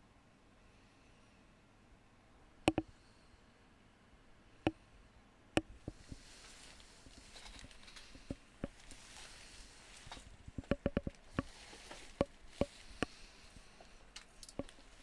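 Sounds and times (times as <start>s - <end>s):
sharp knocks and clicks: 2.7s - 2.9s, 7.6s - 8.8s, 10.1s - 11.5s, 12.1s - 13.2s, 14.4s - 14.8s
soft rustling: 5.8s - 15.0s.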